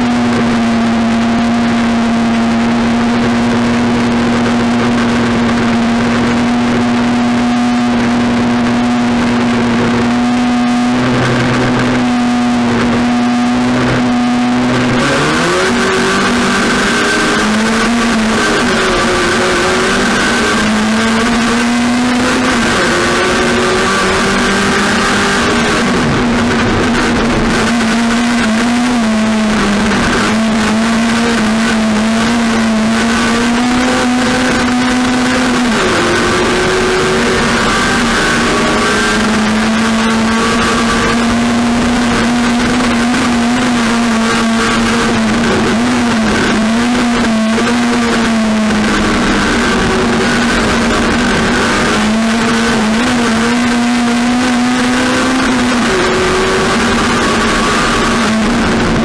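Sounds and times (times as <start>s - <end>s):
race car engine at high revs: 0.0s - 59.0s.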